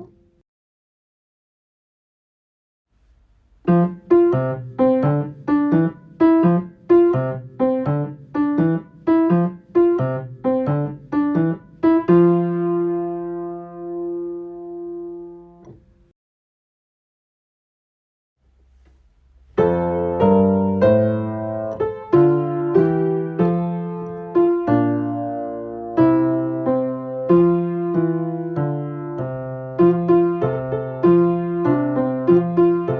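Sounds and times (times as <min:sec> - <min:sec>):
piano chords: 0:03.6 - 0:16.0, 0:19.5 - 0:32.9.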